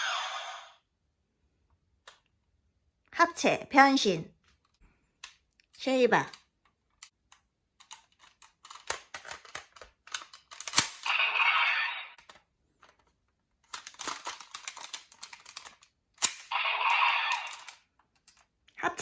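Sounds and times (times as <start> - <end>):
paper rustling and clicking: 7.8 - 11.0, 12.2 - 16.4.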